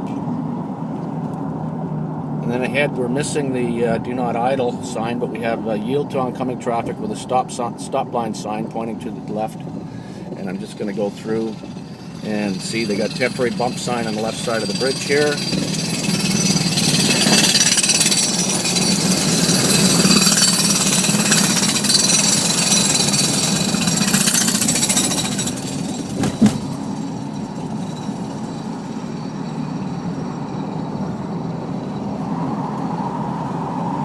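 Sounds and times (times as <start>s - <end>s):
car tyre and road noise: 0.0s - 34.0s
car going over bump: 9.3s - 32.3s.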